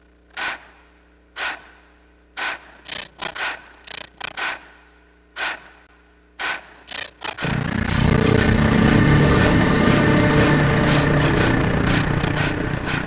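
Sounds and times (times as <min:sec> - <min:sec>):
loud music: 0:07.4 - 0:13.0.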